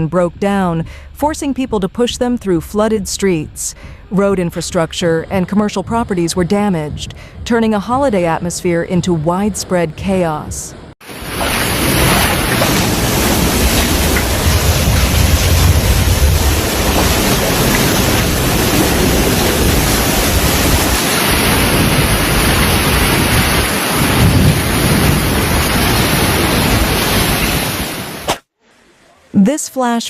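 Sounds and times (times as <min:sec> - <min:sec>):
heavy rainstorm: 0:11.0 - 0:28.3
wind buffeting microphone: 0:11.2 - 0:27.9.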